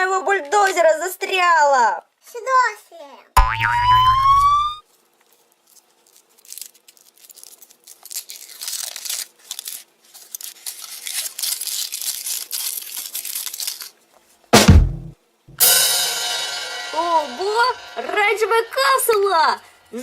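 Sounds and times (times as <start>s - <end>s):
cartoon boing sound effect: 3.4s - 4.8s
foil wrapper crinkling: 4.8s - 14.5s.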